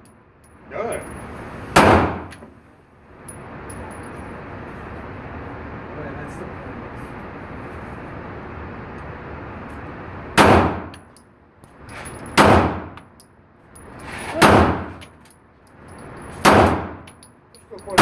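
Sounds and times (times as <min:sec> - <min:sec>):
pistol shots: 0:01.8 - 0:02.3, 0:10.4 - 0:11.0, 0:12.4 - 0:13.0, 0:14.4 - 0:15.0, 0:16.4 - 0:17.1.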